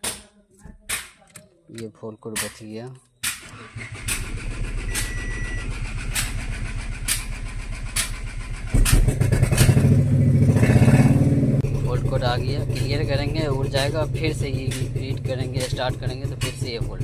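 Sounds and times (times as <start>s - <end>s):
car engine cranking and starting: 3.4s - 17.0s.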